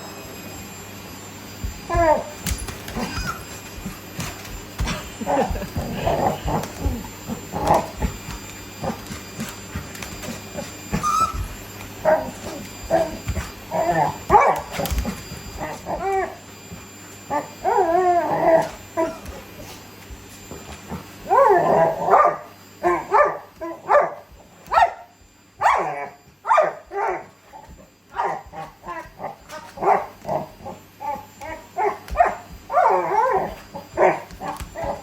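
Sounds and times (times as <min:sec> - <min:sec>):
dog whining: 0:01.7 - 0:09.5, 0:10.1 - 0:16.5, 0:17.3 - 0:19.8, 0:20.9 - 0:24.1, 0:25.6 - 0:35.0
dog yipping and barking: 0:10.9 - 0:11.4, 0:21.3 - 0:27.3, 0:31.0 - 0:34.2.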